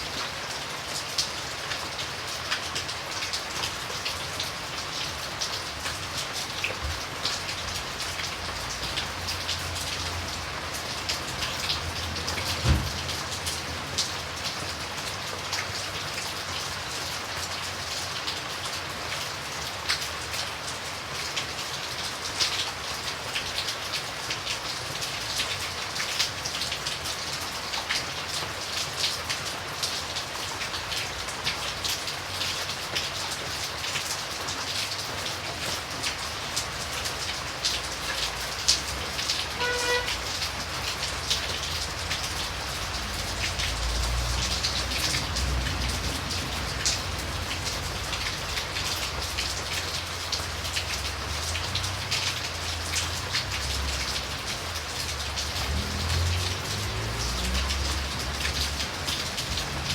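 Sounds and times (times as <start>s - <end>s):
raindrops ticking close by: 0.0s - 59.9s
steady rain: 0.0s - 59.9s
loud thud: 12.6s - 13.0s.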